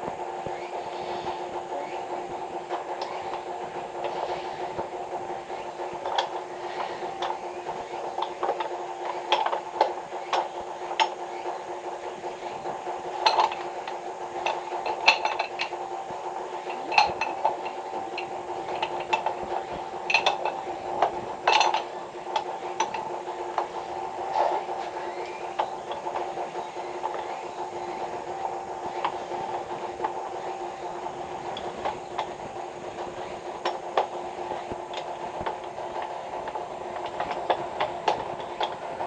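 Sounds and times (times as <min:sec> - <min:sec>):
steady hum: 0:00.0 - 0:39.0
tools and pipe parts clinking: 0:08.2 - 0:11.2, 0:13.2 - 0:13.8, 0:14.4 - 0:15.8, 0:16.7 - 0:19.4, 0:20.0 - 0:23.7.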